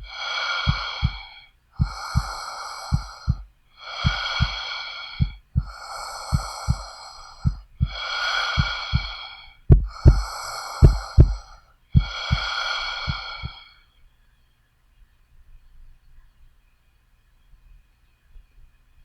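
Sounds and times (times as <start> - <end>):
heartbeat thumps: 0.0 - 13.7
person breathing: 0.0 - 14.0.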